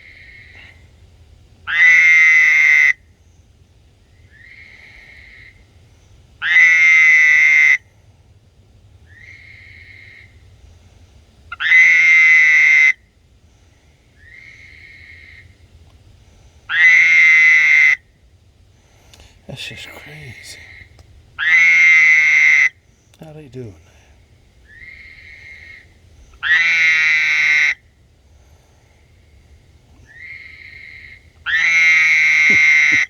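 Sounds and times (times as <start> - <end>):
faint short frog calls: 1.6 - 3.2, 4.1 - 5.7, 6.4 - 7.9, 9.1 - 10.5, 11.5 - 13.1, 14.2 - 15.6, 16.7 - 18.1, 20.0 - 23.2, 24.6 - 27.9, 28.9 - 33.0
frog mating call: 1.7 - 3.0, 6.4 - 7.8, 11.5 - 13.0, 16.7 - 18.0, 20.0 - 22.8, 24.7 - 27.8, 30.0 - 33.0.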